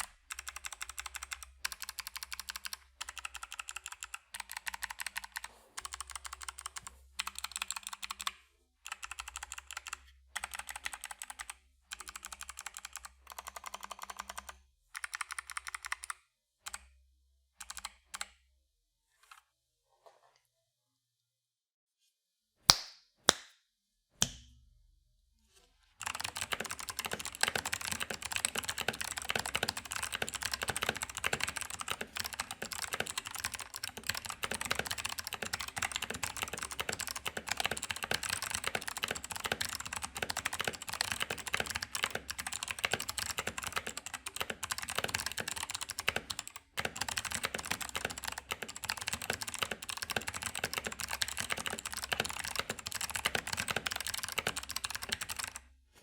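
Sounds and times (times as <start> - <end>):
clicky mechanical keyboard typing: 0.0 - 16.9, 17.6 - 18.4, 26.0 - 55.6.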